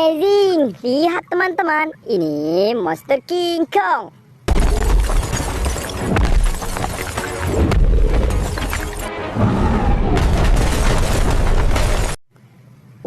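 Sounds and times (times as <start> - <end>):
crashing noise: 4.5 - 12.2.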